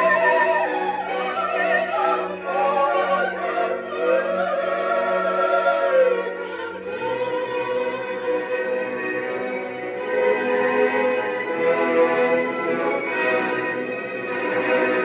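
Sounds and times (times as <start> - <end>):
soprano singing opera: 0.0 - 15.0.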